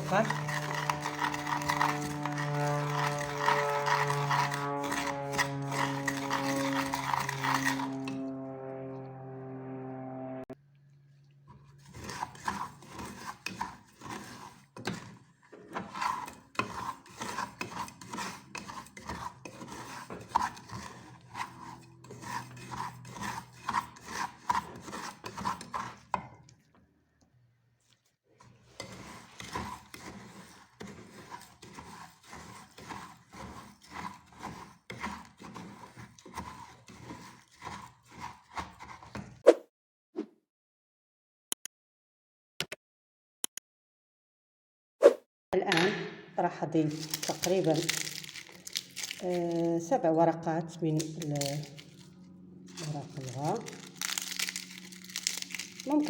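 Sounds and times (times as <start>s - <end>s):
spoon scraping sugar in a pot: 0.0s - 8.5s, 11.4s - 26.6s, 28.4s - 39.4s, 46.7s - 56.0s.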